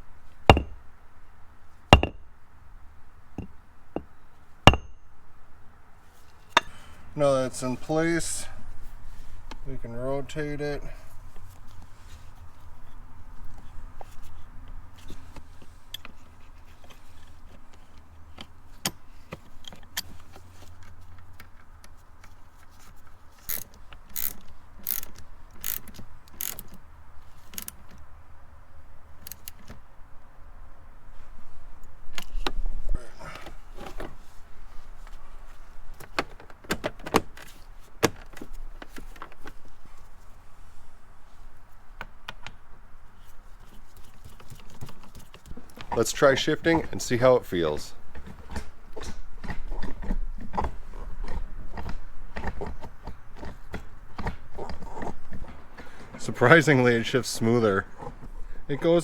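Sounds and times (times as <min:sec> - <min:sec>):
heavy thud: 0:00.5 - 0:00.8, 0:02.0 - 0:02.2, 0:04.7 - 0:05.0
metallic clicks and knocks: 0:00.5 - 0:00.8, 0:01.9 - 0:02.3, 0:04.7 - 0:05.1.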